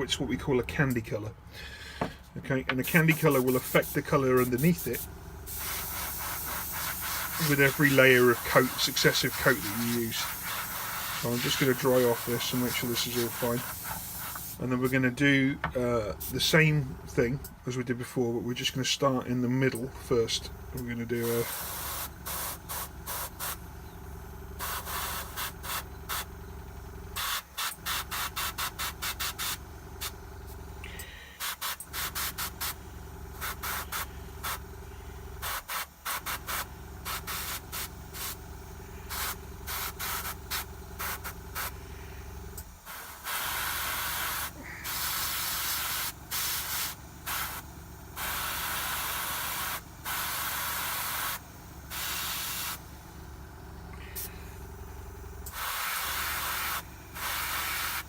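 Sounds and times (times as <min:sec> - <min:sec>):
steady motor hum: 0:00.0 - 0:58.0
airbrush hissing spurts: 0:02.8 - 0:15.0, 0:16.1 - 0:16.6, 0:21.1 - 0:23.6, 0:24.6 - 0:26.3, 0:27.2 - 0:41.8, 0:42.5 - 0:52.9, 0:54.0 - 0:54.5, 0:55.4 - 0:58.0.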